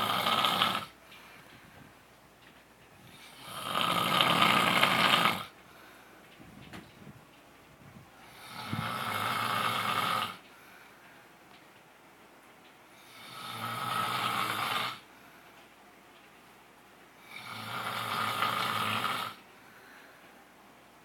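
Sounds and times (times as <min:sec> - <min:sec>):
man snoring: 0:00.0 - 0:01.0, 0:03.1 - 0:05.5, 0:08.2 - 0:10.4, 0:13.0 - 0:15.1, 0:17.2 - 0:19.4
quiet breathing: 0:00.0 - 0:02.2, 0:05.5 - 0:06.5, 0:08.0 - 0:11.6, 0:12.8 - 0:16.0, 0:17.1 - 0:21.0.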